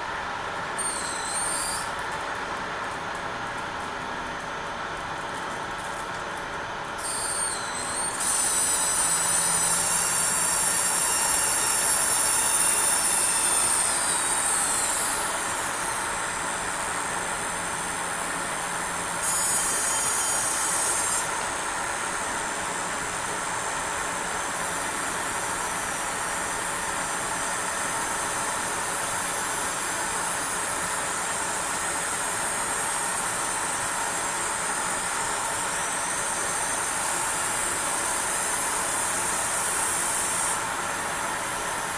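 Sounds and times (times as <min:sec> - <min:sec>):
high-pitched coil whine: 0:00.8 - 0:02.0, 0:07.0 - 0:17.5.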